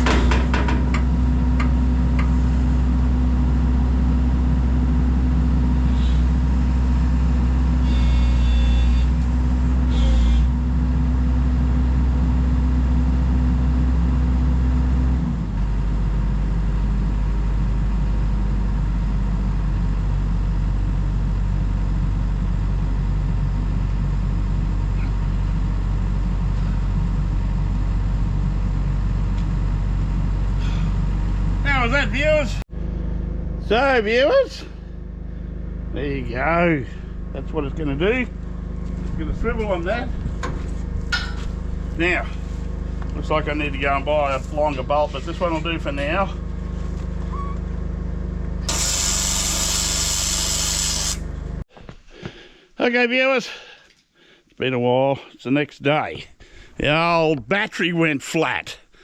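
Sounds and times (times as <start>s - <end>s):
excavator diesel engine running: 0.0s - 51.7s
high-pitched hydraulic whines: 5.8s - 6.5s, 7.8s - 10.6s, 48.6s - 51.3s.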